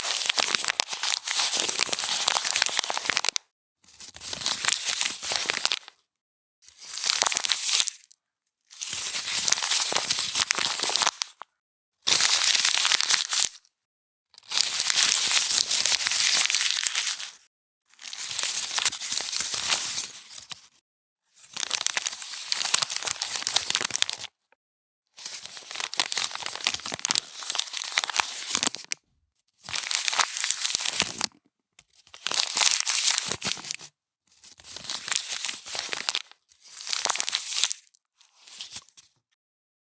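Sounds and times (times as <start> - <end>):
paper crumpling: 0.0 - 3.4, 9.5 - 11.3, 21.6 - 24.3, 25.4 - 28.9, 29.8 - 31.3, 32.2 - 33.8, 34.8 - 36.2.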